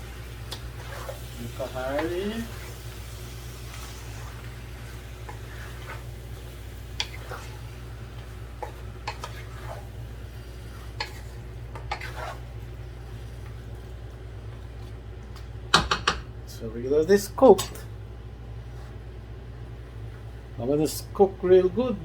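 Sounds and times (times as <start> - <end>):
steady low hum: 0.0 - 22.0
spoon clinking and scraping pot: 0.5 - 1.2, 7.0 - 7.6, 8.6 - 9.9, 10.8 - 12.4.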